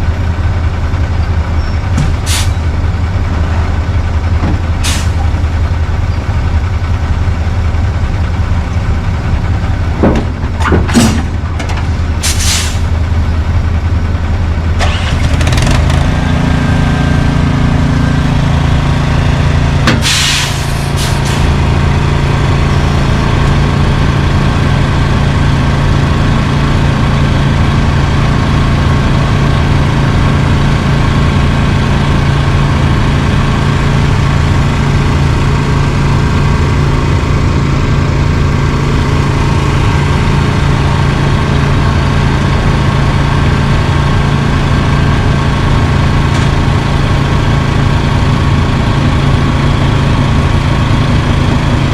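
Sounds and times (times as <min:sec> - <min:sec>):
diesel truck engine running: 0:00.0 - 0:51.9
air brake hisses: 0:02.2 - 0:02.6, 0:04.8 - 0:05.3, 0:12.2 - 0:12.9, 0:20.0 - 0:21.5.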